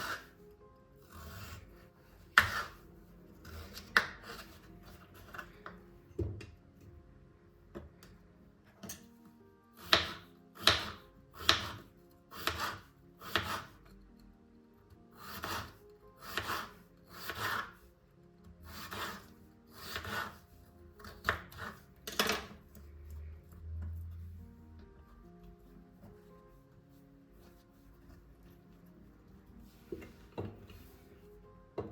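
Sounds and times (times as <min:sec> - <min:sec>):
soft background music: 0:00.0 - 0:31.9
knife cutting on board: 0:02.3 - 0:02.8, 0:09.8 - 0:13.8, 0:15.2 - 0:17.8, 0:18.6 - 0:20.4, 0:21.0 - 0:22.5.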